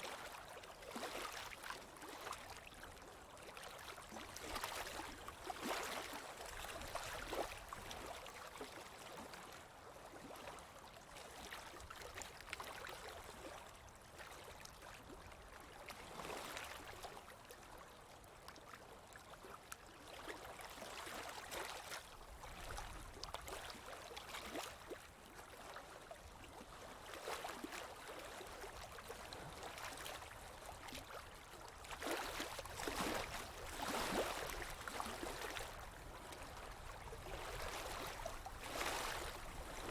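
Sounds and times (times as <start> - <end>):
water flowing and splashing: 28.7 - 39.9.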